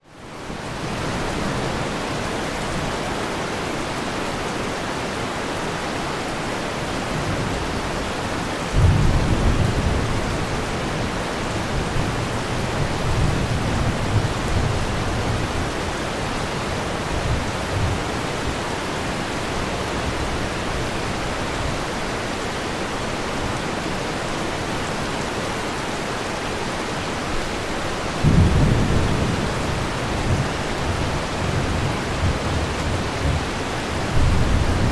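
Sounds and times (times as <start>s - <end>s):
steady rain hiss: 0.0s - 34.9s
rumble of thunder: 8.7s - 15.7s, 28.2s - 34.9s.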